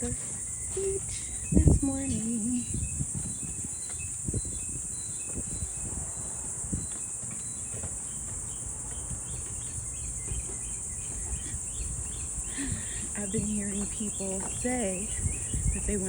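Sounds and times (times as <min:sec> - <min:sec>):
bird chirps: 0:00.0 - 0:16.0
insects trilling: 0:00.0 - 0:16.0
rustling with soft knocks: 0:02.2 - 0:11.7.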